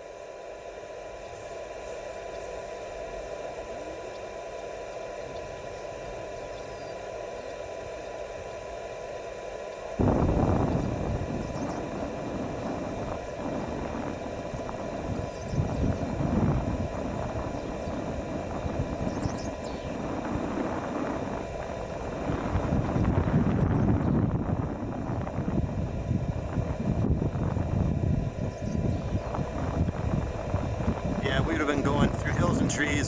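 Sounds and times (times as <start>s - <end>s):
low hum: 0.0s - 33.0s
wind buffeting microphone: 10.0s - 33.0s.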